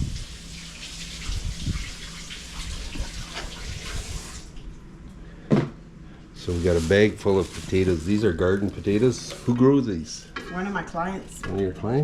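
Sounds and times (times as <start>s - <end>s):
water splashing while rinsing: 0.0s - 4.6s, 6.4s - 9.5s.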